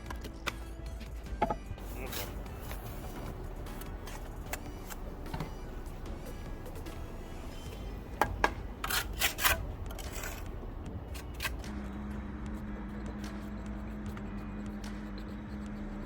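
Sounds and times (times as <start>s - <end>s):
steady low hum: 0.0s - 16.0s
trowel scraping mortar on stone: 1.4s - 5.7s, 6.3s - 11.8s.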